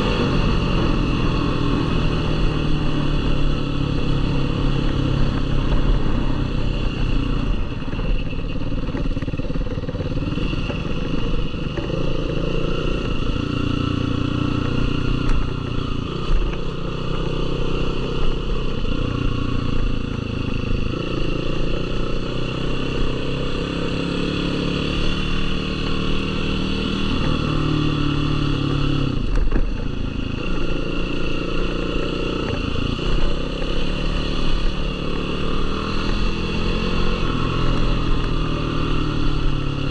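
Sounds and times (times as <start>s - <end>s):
quad engine revving: 9.1s - 39.9s.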